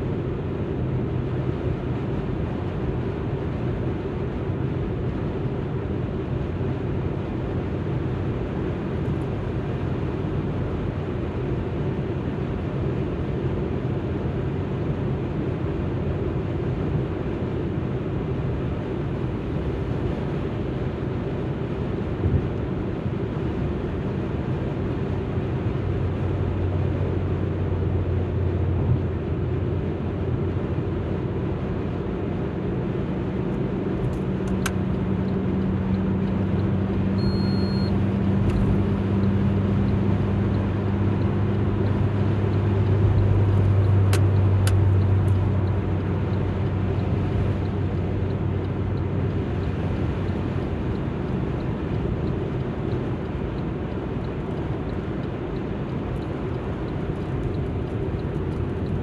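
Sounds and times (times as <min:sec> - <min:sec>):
road noise: 0:17.9 - 0:59.0
car engine: 0:25.8 - 0:59.0.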